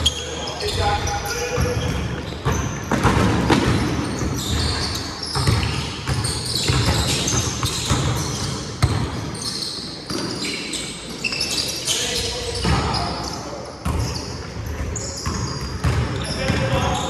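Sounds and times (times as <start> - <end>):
sneakers squeaking on court: 0.0 - 17.0
basketball bouncing on hardwood floor: 1.6 - 4.8, 5.4 - 9.1, 14.7 - 16.8.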